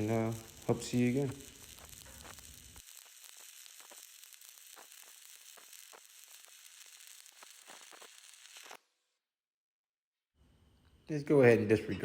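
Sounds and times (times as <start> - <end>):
welding arc crackling and popping: 0.0 - 9.0.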